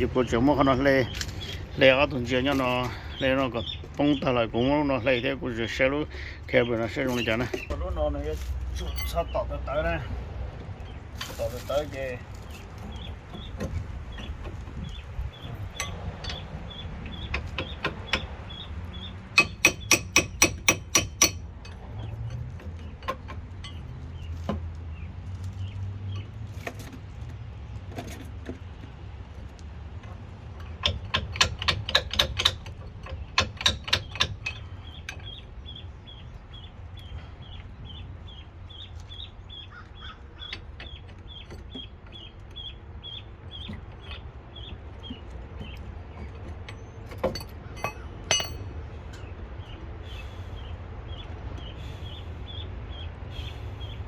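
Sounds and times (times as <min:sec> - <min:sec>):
sharp taps on metal parts: 0:19.3 - 0:24.7, 0:30.1 - 0:35.4, 0:45.0 - 0:49.3.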